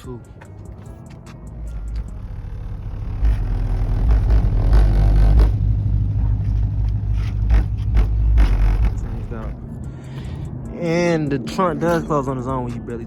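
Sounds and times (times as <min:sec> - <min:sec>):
music with heavy bass: 0:00.0 - 0:13.0.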